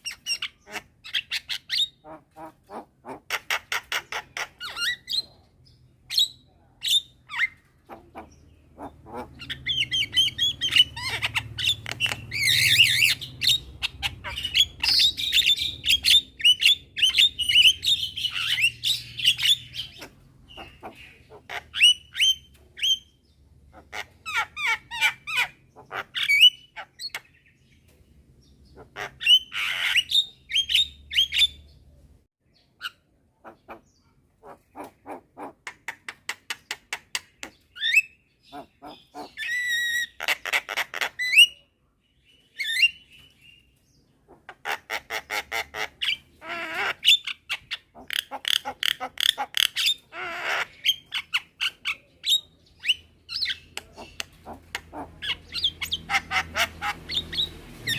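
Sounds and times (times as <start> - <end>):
mynas calling: 6.9 - 23.0, 37.8 - 41.6, 44.3 - 57.9.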